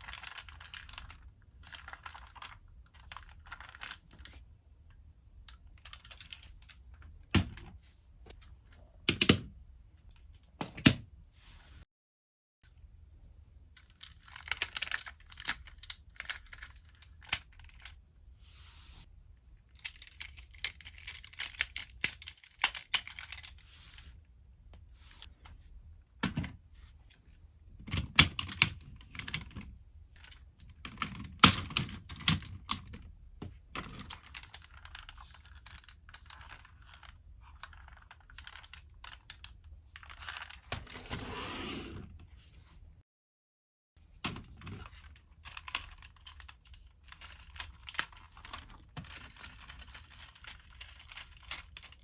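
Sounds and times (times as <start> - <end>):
plastic toy parts clicking: 0.0 - 4.3, 13.8 - 18.0, 19.8 - 23.5, 33.8 - 40.7, 44.2 - 52.0.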